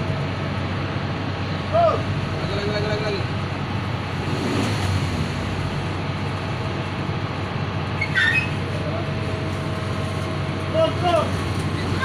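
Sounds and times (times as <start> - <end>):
vehicle engine running: 0.0 - 12.0
short high squeak: 8.0 - 8.6.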